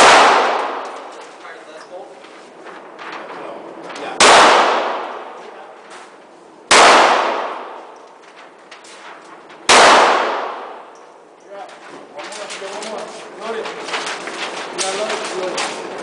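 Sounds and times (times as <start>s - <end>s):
gunshots with echo: 0.0s - 1.2s, 4.2s - 5.4s, 6.7s - 8.0s, 9.7s - 10.9s.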